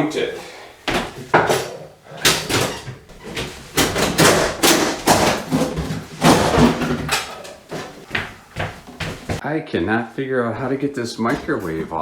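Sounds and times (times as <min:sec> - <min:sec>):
microwave knocking against wall: 0:00.4 - 0:09.4.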